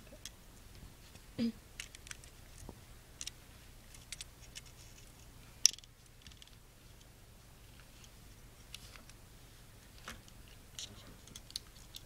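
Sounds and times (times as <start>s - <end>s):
small parts clicking: 1.8s - 2.6s, 3.2s - 7.1s, 10.2s - 12.0s.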